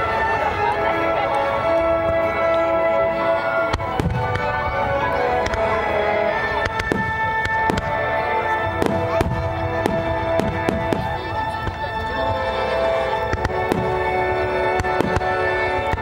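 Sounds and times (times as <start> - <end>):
fireworks crackle: 2.0 - 16.0
fireworks bursting with sharp bangs: 3.6 - 16.0.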